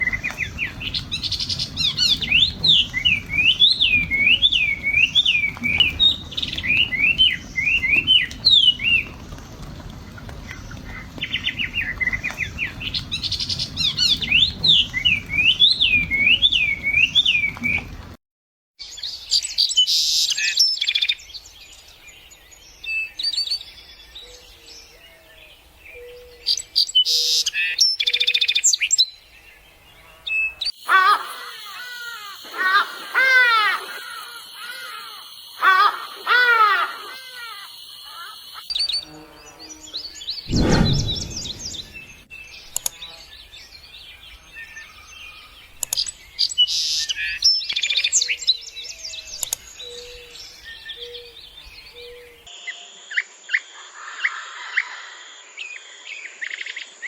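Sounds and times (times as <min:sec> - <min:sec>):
bird chirps and calls: 0:30.1 - 0:52.3
bird whistling swooping notes: 0:39.9 - 0:42.6.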